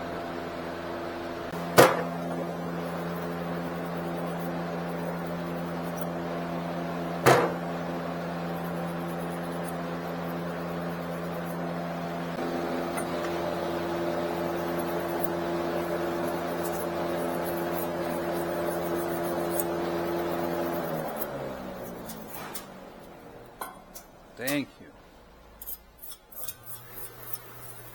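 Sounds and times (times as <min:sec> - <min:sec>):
steady mechanical hum: 0:00.0 - 0:27.9
sharp knock: 0:01.8 - 0:02.2, 0:07.2 - 0:07.6.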